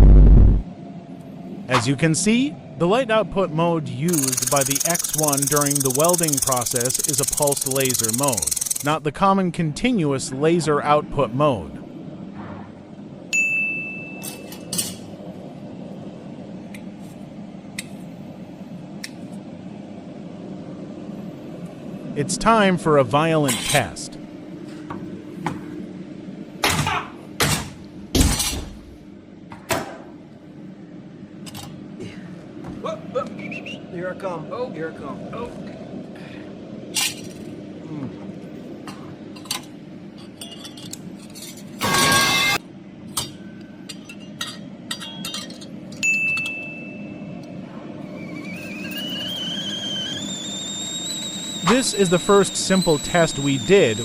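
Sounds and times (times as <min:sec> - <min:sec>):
high metallic ringing note: 0:13.3 - 0:14.7, 0:41.8 - 0:42.6
faint rising whistle tone: 0:48.1 - 0:54.0.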